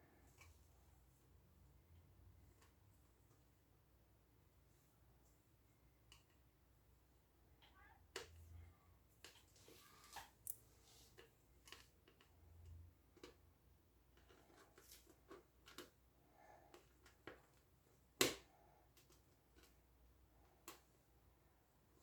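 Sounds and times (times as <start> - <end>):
light clicks and taps: 14.1 - 16.0.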